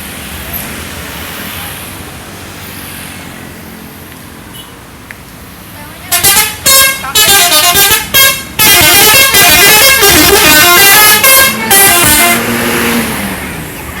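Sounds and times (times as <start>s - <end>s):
musical bus air horn: 6.1s - 13.2s.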